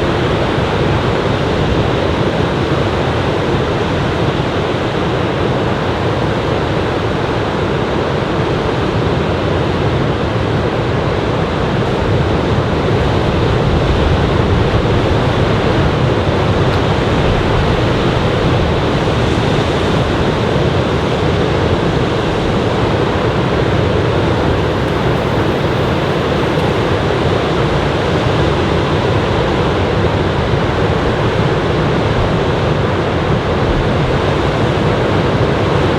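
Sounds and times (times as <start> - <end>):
ocean surf breaking: 22.6 - 27.3.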